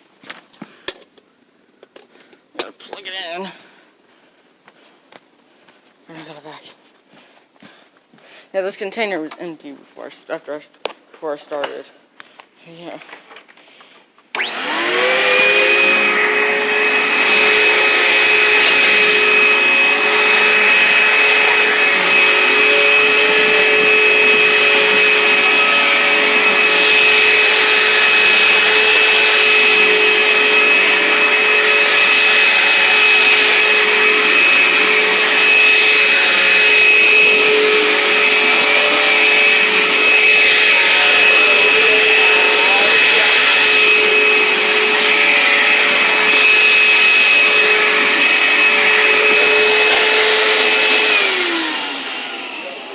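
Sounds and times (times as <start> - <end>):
vacuum cleaner whining: 14.3 - 52.9.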